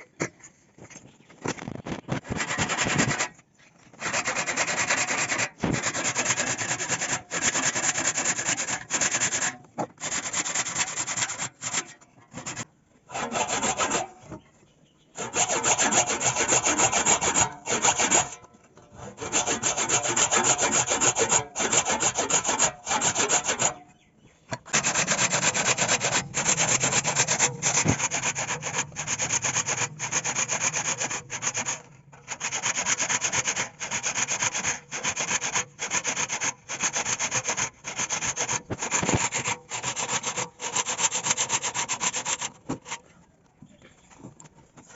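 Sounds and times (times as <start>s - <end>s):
hand sanding wood: 2.2s - 3.3s, 3.9s - 14.3s, 15.2s - 18.4s, 19.0s - 23.8s, 24.7s - 43.0s.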